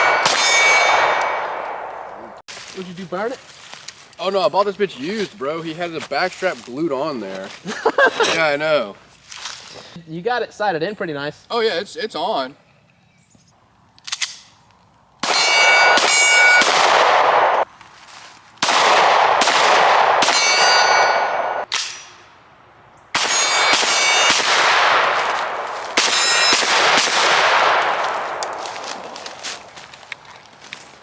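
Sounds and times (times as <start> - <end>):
bullets ringing on steel targets: 0.0 - 2.1, 15.2 - 17.6, 20.2 - 22.3, 23.2 - 24.7, 25.9 - 27.2
rapid gunfire: 18.6 - 21.6, 23.2 - 28.4.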